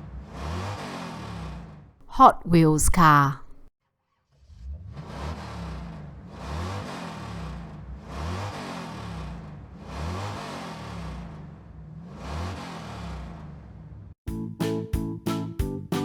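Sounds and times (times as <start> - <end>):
car engine revving: 5.0 - 13.6.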